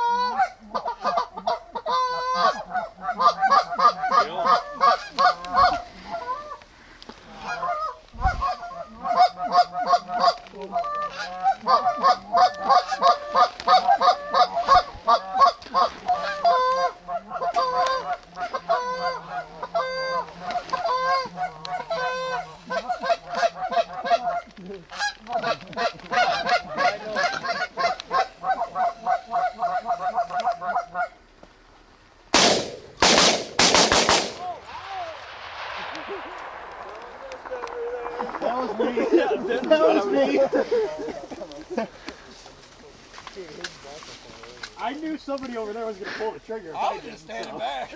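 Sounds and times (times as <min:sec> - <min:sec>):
geese honking: 0:00.0 - 0:31.4, 0:32.3 - 0:43.2
shotgun shots: 0:32.3 - 0:39.1.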